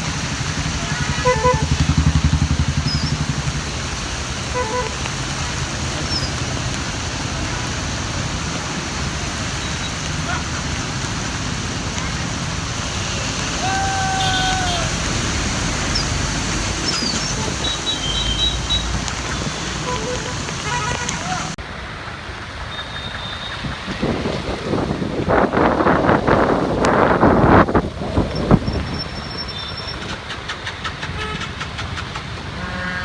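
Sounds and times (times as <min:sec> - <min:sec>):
heavy vehicle engine rumbling: 0:00.0 - 0:24.6
steady rain: 0:00.0 - 0:32.6
road traffic noise: 0:00.0 - 0:33.0
vehicle horn toots: 0:00.7 - 0:03.3, 0:04.5 - 0:05.1, 0:12.9 - 0:15.0, 0:16.9 - 0:21.6.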